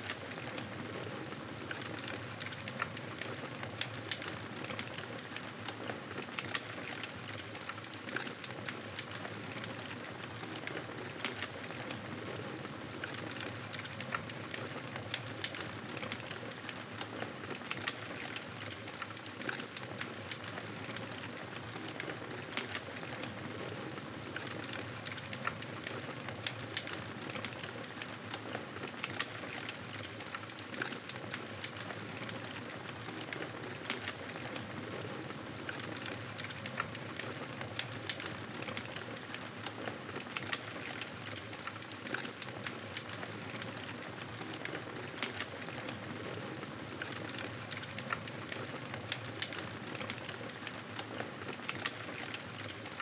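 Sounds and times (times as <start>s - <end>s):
campfire crackling and popping: 24.2s - 28.3s, 39.7s - 53.0s.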